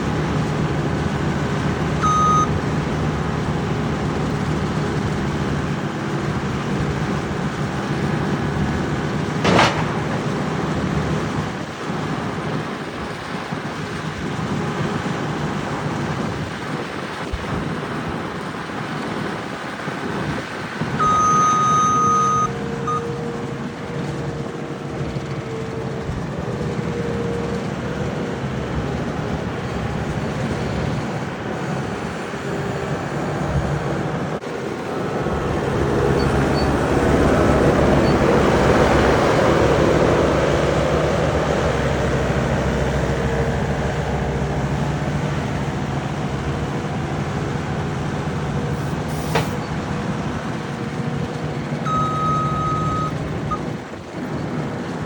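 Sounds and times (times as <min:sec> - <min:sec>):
farm machine engine running: 0:00.0 - 0:55.0
beep: 0:02.0 - 0:02.6, 0:21.0 - 0:23.1, 0:51.9 - 0:53.6.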